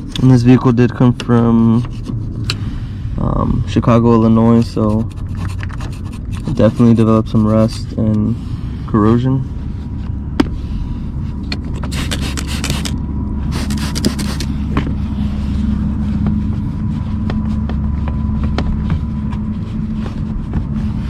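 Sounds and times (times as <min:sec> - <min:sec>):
steady low rumble: 0:00.0 - 0:21.0
aerosol spray can hissing: 0:11.9 - 0:14.5.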